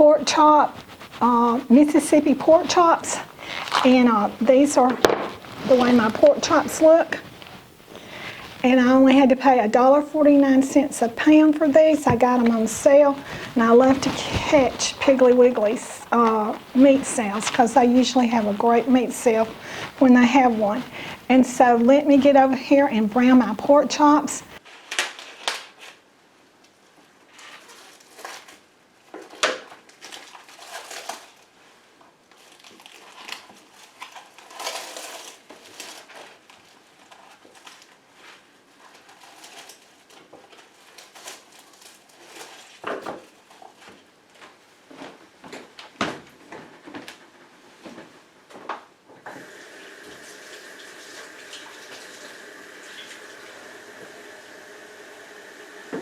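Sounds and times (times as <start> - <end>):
running water: 49.4 - 56.0.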